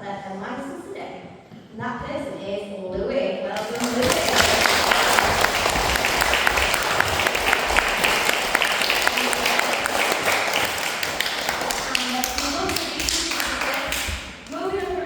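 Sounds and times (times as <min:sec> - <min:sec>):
children applauding: 0:03.6 - 0:14.1.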